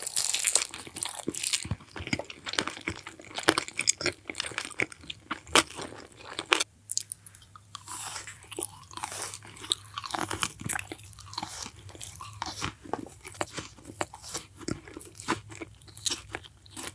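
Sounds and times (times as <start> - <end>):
crunchy bites and chewing: 0.0 - 16.9.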